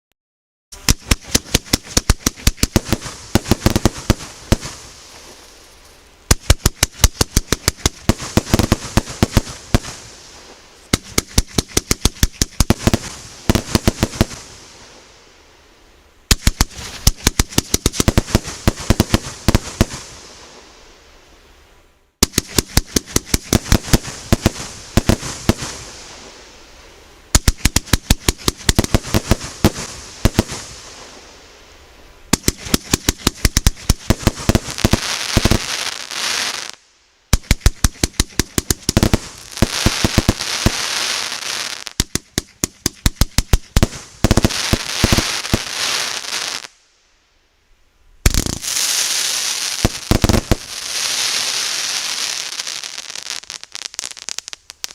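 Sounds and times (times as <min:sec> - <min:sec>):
firework stars crackling: 0:00.7 - 0:47.1, 0:48.2 - 0:54.9
firework cake firing shots: 0:00.8 - 0:04.9, 0:06.3 - 0:10.0, 0:10.9 - 0:14.4, 0:16.3 - 0:20.0, 0:22.2 - 0:25.8, 0:27.4 - 0:30.6, 0:32.3 - 0:35.7, 0:37.4 - 0:45.8.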